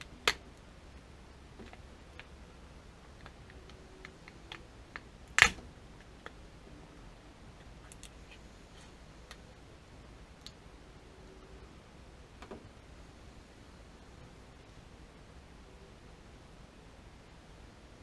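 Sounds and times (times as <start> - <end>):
loud sharp snap: 5.3 - 5.7
light clicks of small parts: 7.6 - 8.4.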